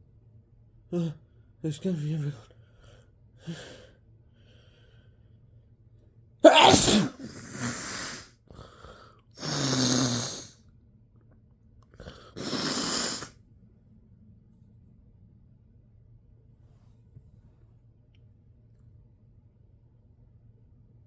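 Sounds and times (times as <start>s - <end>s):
loud spray sneeze: 6.4s - 8.3s, 9.4s - 10.6s, 12.4s - 13.3s
breathy exhales: 12.0s - 13.3s.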